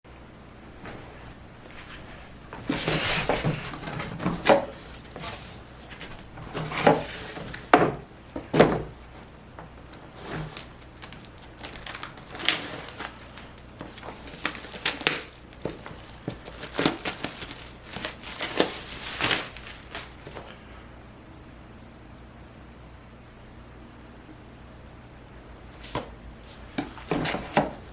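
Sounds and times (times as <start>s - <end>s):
packaging crinkling and rustling: 1.1s - 20.6s, 25.7s - 27.9s.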